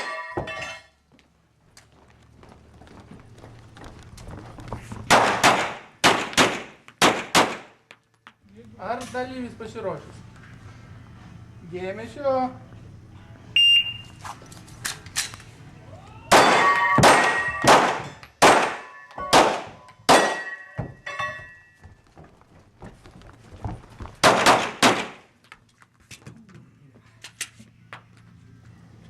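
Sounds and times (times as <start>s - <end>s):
steel targets ringing: 0.0s - 1.0s, 16.3s - 21.9s
pistol shots: 5.1s - 7.8s, 16.3s - 20.6s, 24.2s - 25.2s
shot timer beep: 13.6s - 14.2s.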